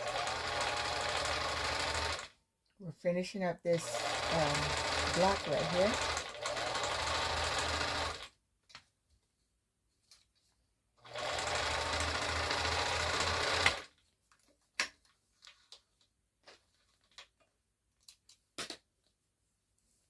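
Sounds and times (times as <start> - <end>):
sewing machine stitching: 0.0 - 2.3, 3.7 - 8.3, 11.0 - 13.9.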